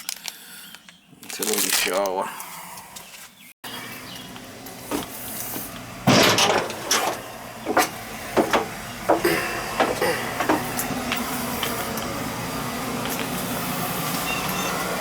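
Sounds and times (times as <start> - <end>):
irregular knocks and clunks: 6.1 - 11.2.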